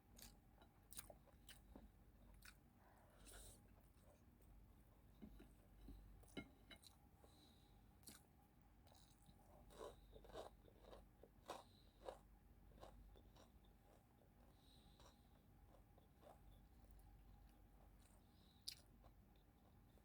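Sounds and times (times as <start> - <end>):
person chewing: 0.2 - 2.6, 8.0 - 8.3, 8.9 - 14.0, 15.0 - 16.4, 18.0 - 20.0.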